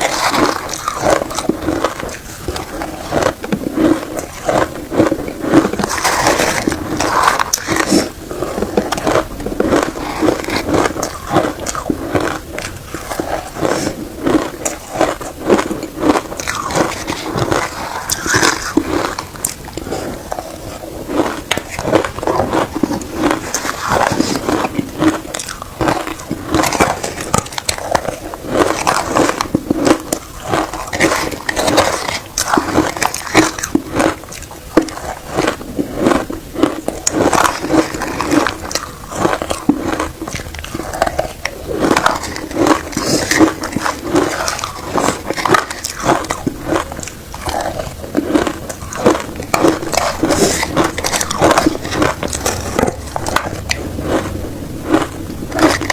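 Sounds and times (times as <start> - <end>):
ice crunching while chewed: 0.0 - 55.9.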